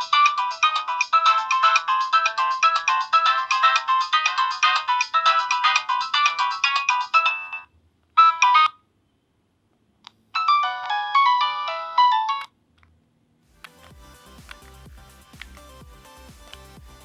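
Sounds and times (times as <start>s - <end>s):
faint background music with beat: 0.0s - 7.3s, 13.5s - 17.0s
phone ringtone melody: 0.0s - 8.8s, 10.4s - 12.5s.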